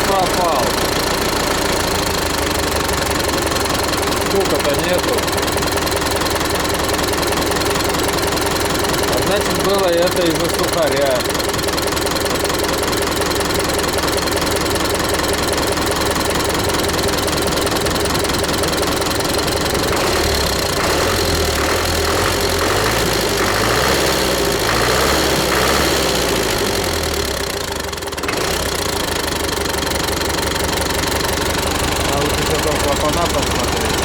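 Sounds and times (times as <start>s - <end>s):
tractor diesel engine running: 0.0s - 34.0s.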